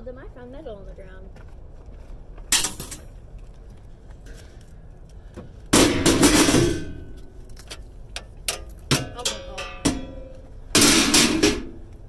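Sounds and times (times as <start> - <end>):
metal clattering crash: 5.8 - 7.2, 8.6 - 11.9
scrap metal clanking: 5.8 - 11.9.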